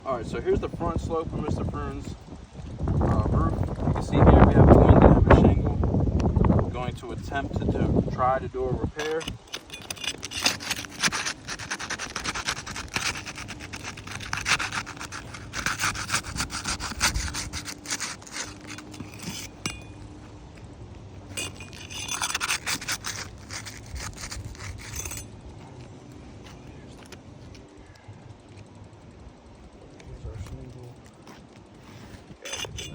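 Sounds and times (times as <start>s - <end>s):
roof shingles being scraped: 9.0s - 20.1s, 21.3s - 25.3s.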